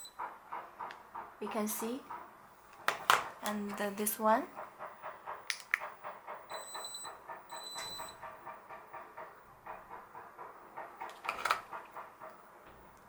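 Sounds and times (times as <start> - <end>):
watch pager beeps: 6.5 - 8.2.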